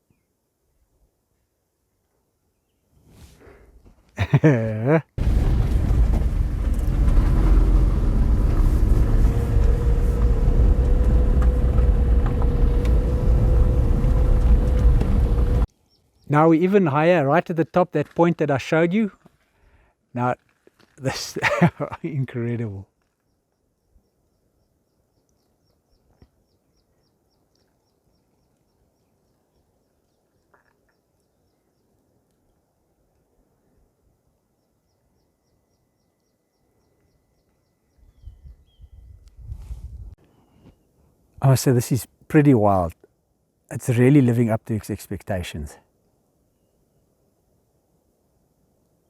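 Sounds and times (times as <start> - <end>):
car engine and tyres on gravel: 5.2 - 15.7
small bird chirping: 34.6 - 39.2.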